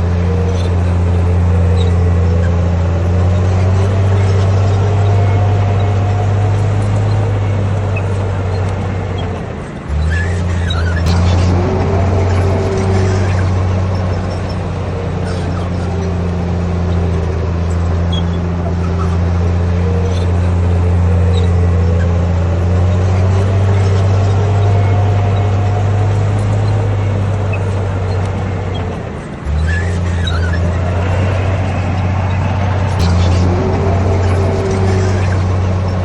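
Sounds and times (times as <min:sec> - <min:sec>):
bulldozer diesel engine running: 0:00.0 - 0:36.0.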